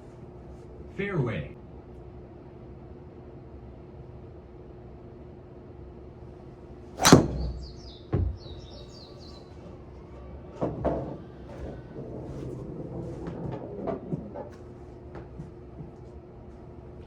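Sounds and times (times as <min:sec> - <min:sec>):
golf club striking ball: 0:07.0 - 0:07.9
dull thump: 0:07.0 - 0:08.4.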